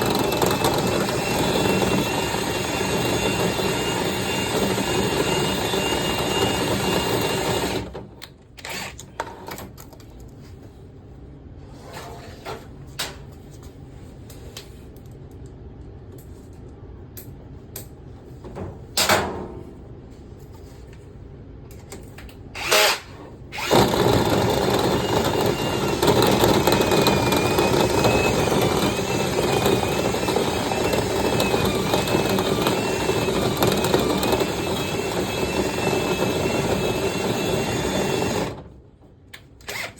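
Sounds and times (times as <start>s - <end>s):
motorised cleaning equipment running: 23.8s - 38.6s.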